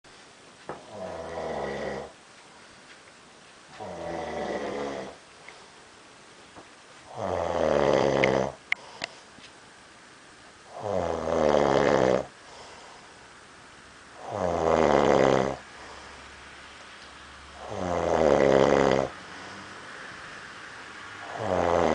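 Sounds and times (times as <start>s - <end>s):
man snoring loudly: 0.9s - 2.2s, 3.8s - 5.2s, 7.1s - 8.6s, 10.7s - 12.3s, 14.2s - 15.7s, 17.6s - 19.2s, 21.2s - 21.9s.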